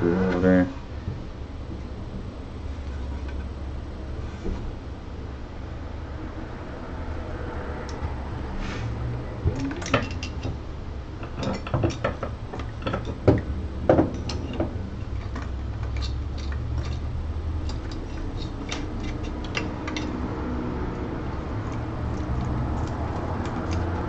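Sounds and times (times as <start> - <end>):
metal parts clicking and knocking: 9.6 - 10.6, 11.2 - 20.2.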